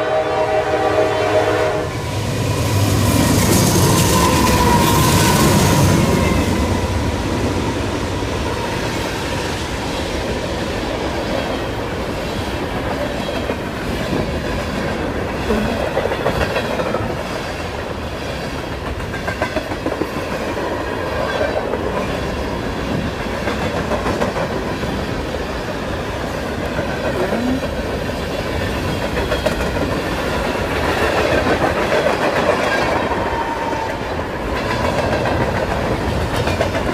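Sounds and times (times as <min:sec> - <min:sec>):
wheels clacking over rail joints: 0:10.6 - 0:36.9.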